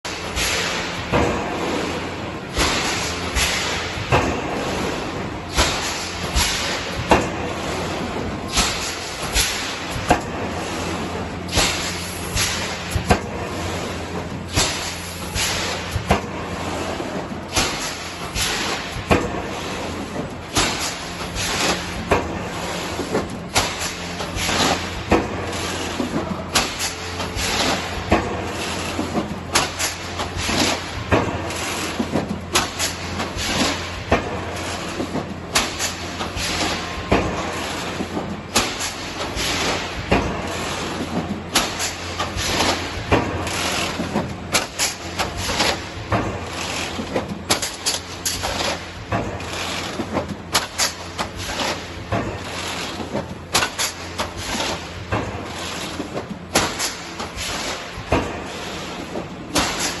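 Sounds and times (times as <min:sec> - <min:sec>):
machine hum: 0:00.0 - 1:00.0
sharp mechanical clacks: 0:17.0 - 1:00.0.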